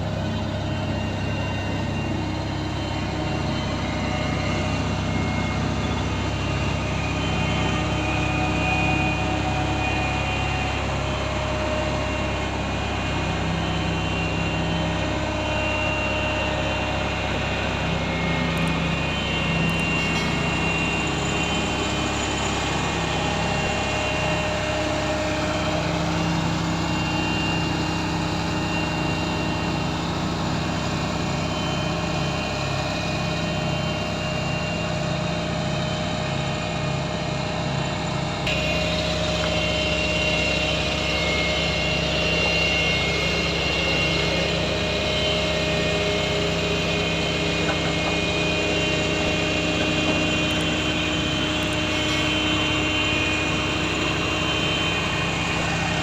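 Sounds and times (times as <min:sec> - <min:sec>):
heavy machinery diesel engine running: 0:00.0 - 0:56.0.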